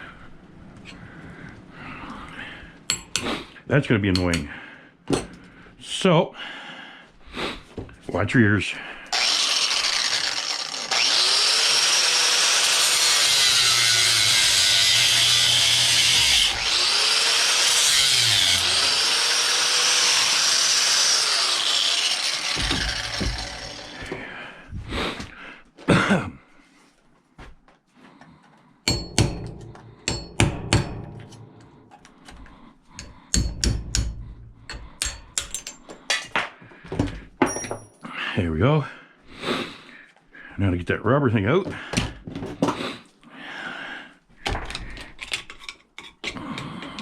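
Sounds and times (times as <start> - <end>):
power tool cutting metal: 9.1 - 24.1
knocks and clatter of handling: 35.4 - 38.0, 41.7 - 42.8.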